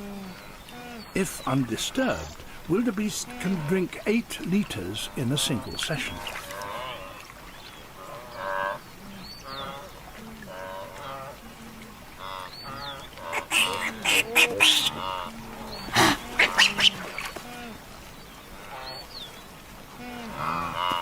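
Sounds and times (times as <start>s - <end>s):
splashes in water: 0.7s - 21.0s
wildebeest grunts and honks: 12.2s - 17.7s.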